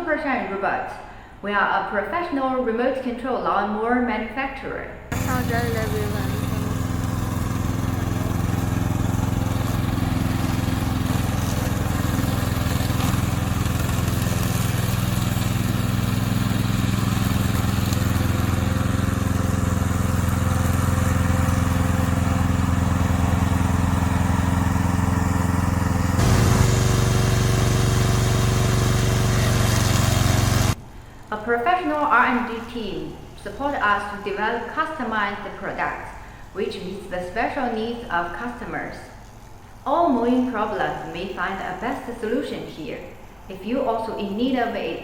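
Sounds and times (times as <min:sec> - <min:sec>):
lawn mower petrol engine running: 0:05.1 - 0:30.8.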